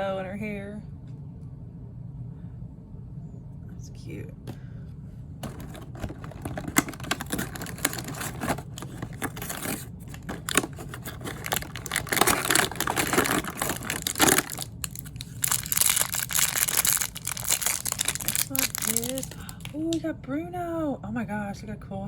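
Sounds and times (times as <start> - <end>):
plastic bag crinkling and tearing: 5.4 - 19.8.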